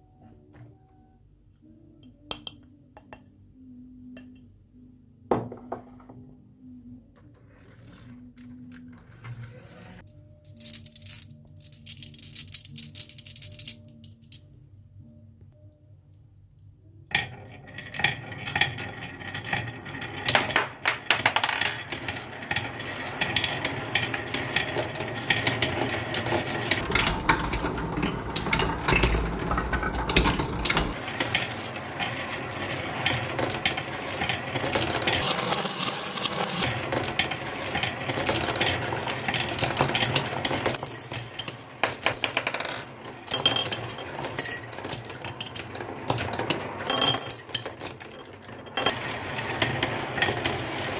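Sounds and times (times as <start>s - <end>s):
marbles clattering down wooden run: 17.2s - 26.8s, 29.9s - 50.9s.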